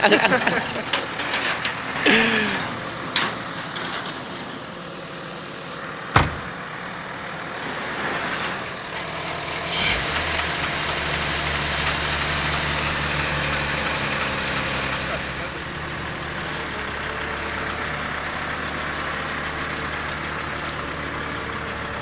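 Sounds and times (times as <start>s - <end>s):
car engine starting and idling: 0.0s - 22.0s
sharp knock: 6.2s - 6.5s.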